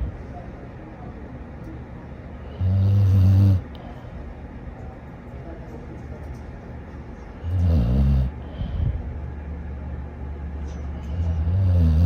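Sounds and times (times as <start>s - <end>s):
dog snoring: 2.6s - 3.7s, 7.4s - 8.4s, 11.1s - 12.0s.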